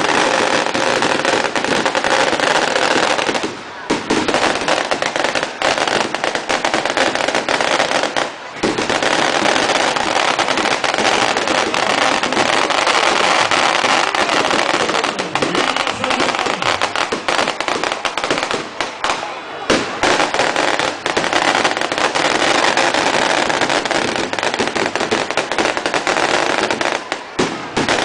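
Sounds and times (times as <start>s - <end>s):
firecrackers crackling: 0.0s - 28.0s.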